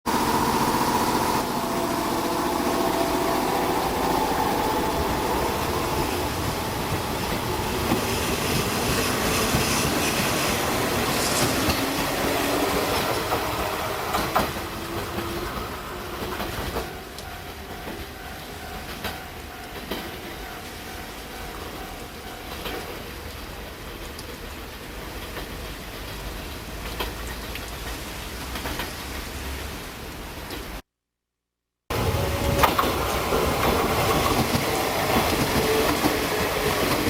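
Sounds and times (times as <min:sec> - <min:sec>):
electric train running past: 0:00.1 - 0:29.8, 0:31.9 - 0:37.0.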